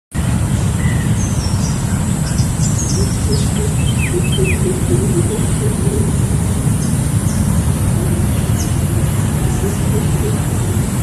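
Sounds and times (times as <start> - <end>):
steady low rumble: 0.2 - 11.0
small bird chirping and whistling: 2.7 - 7.5.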